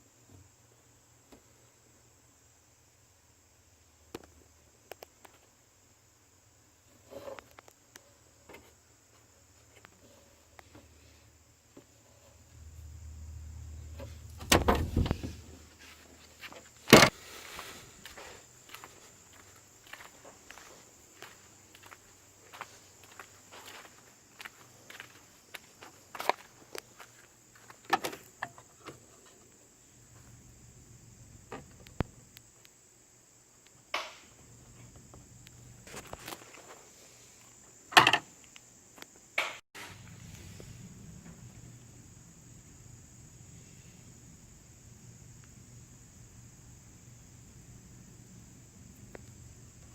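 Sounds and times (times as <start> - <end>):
low hum: 12.1 - 15.8.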